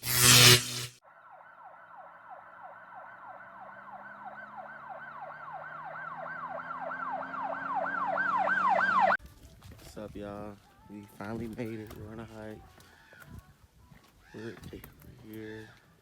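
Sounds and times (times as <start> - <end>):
loud burst of noise: 0.0 - 1.0
siren in fast yelp: 1.0 - 9.2.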